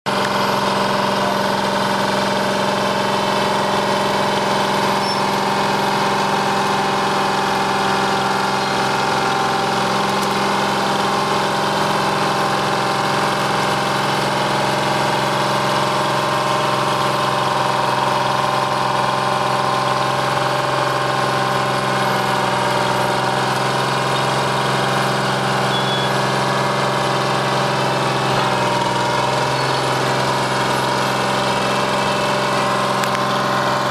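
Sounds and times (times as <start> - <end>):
bulldozer diesel engine running: 0.0 - 33.9.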